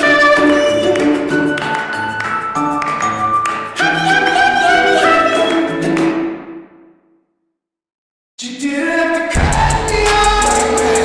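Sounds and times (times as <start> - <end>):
orchestral music with held notes: 0.0 - 6.6
percussion hit: 9.4 - 11.0.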